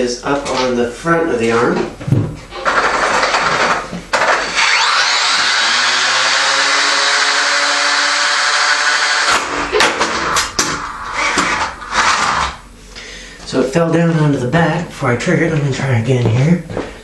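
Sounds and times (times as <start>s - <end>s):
electric motor whine: 4.2s - 12.7s.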